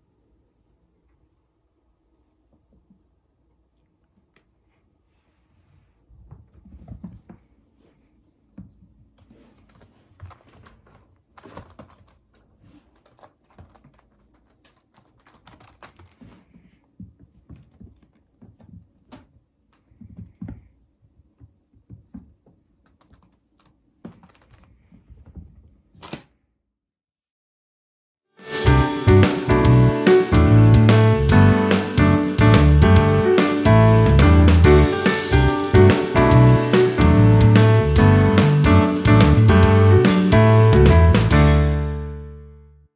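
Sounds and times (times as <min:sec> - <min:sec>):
kitten scampering and tapping: 0:09.2 - 0:19.4.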